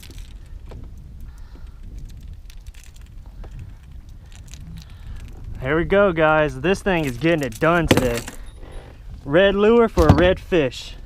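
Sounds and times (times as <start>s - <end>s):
gear handling clicks and rattles: 0.0s - 5.6s, 6.4s - 9.0s
wind rumbling on microphone: 0.0s - 11.0s.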